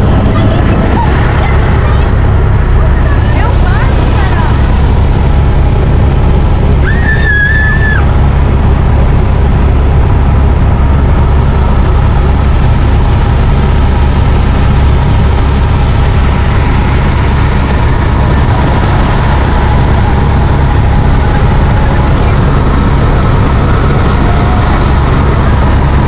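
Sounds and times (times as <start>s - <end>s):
helicopter engine and rotor: 0.0s - 26.0s.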